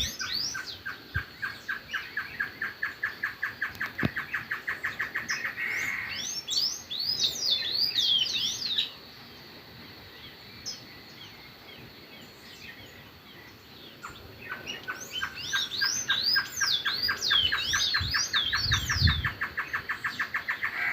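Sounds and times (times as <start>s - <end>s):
birds singing: 0.0s - 20.9s.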